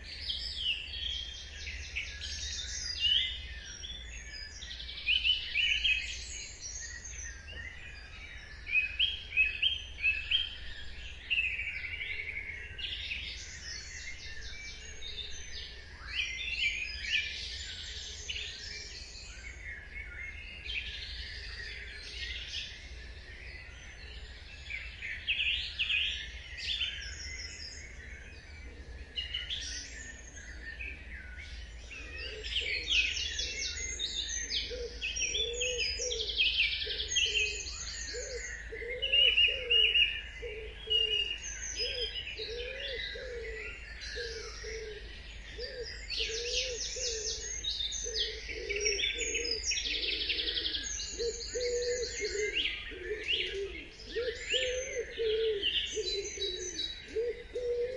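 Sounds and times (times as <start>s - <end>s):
songbirds chirping and trilling: 0.0s - 57.9s
low bird call: 23.8s - 57.9s.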